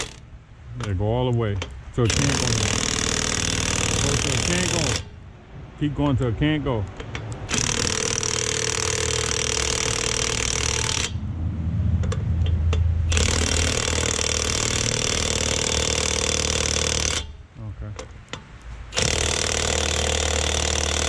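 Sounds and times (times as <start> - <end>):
impact wrench hammering: 0.0 - 0.2, 1.6 - 5.2, 7.0 - 11.2, 12.0 - 17.4, 18.0 - 21.0
low hum: 8.7 - 15.9.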